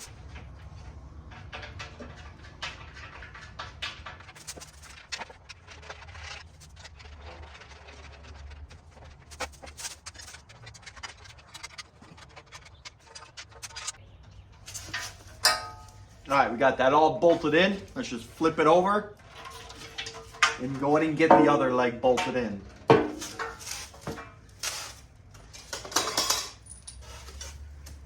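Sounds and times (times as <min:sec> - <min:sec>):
metal parts clicking and knocking: 0:22.3 - 0:28.0.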